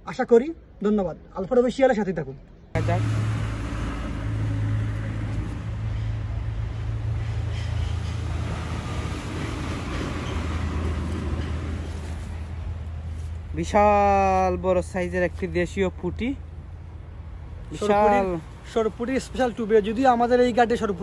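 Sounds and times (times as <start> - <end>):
low engine hum: 2.8 - 13.7.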